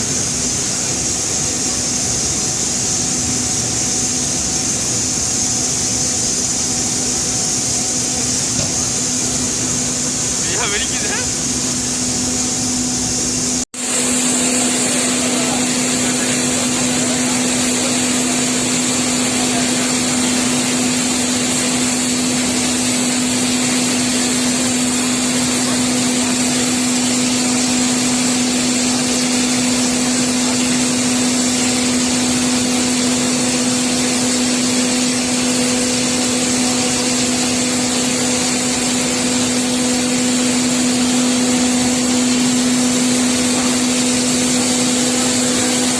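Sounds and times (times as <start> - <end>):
coal pouring rushing noise: 0.0 - 13.6
machine hum: 0.0 - 13.7.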